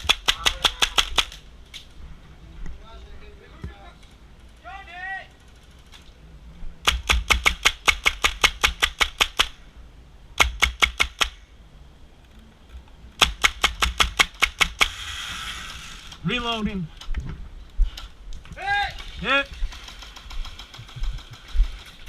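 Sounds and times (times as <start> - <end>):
airsoft gun rapid firing: 0.0 - 1.4, 6.8 - 9.6, 10.4 - 11.4, 13.2 - 15.0, 19.6 - 22.0.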